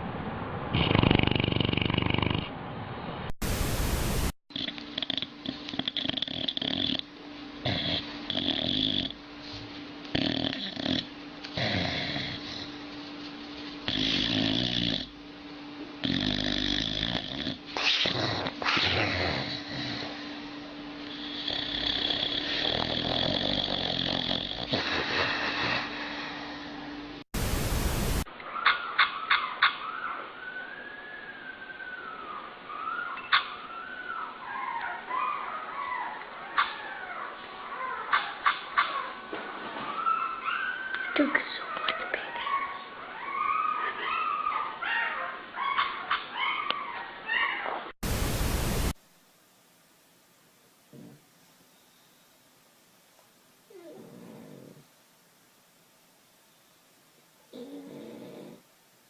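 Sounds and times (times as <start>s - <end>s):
dog snoring: 0.7s - 2.6s, 4.5s - 12.8s, 13.8s - 15.2s, 16.0s - 20.4s, 21.0s - 26.8s, 50.9s - 51.2s, 53.7s - 54.9s, 57.5s - 58.7s
static hiss: 3.4s - 28.3s, 48.0s - 59.0s
dog whining in sleep: 7.6s - 12.8s, 16.0s - 20.4s, 21.0s - 25.9s, 28.6s - 38.3s, 38.9s - 47.9s, 53.7s - 54.9s, 57.5s - 58.6s.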